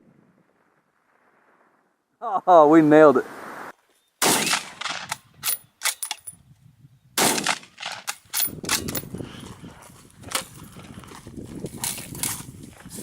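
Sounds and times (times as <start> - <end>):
rifle shot: 4.2 - 6.0, 7.2 - 9.0.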